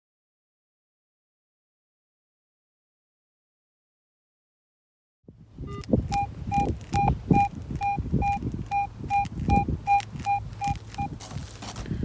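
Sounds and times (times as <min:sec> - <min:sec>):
metal detector beeping: 0:05.6 - 0:11.2.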